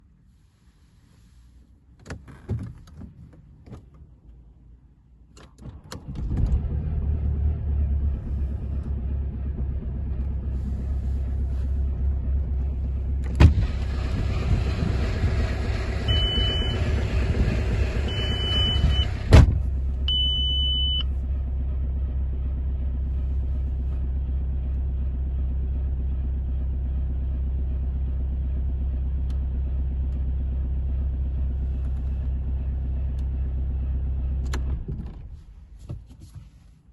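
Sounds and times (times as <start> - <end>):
diesel engine idling: 6.6 - 34.5
short high beeps: 20.1 - 21.1.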